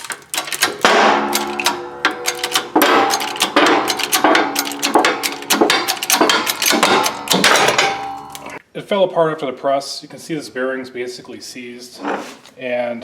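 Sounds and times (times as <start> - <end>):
metal ringing: 0.0 - 8.6.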